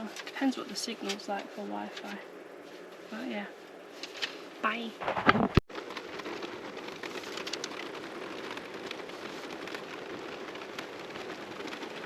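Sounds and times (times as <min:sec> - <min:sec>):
steady rain falling: 0:00.0 - 0:12.0.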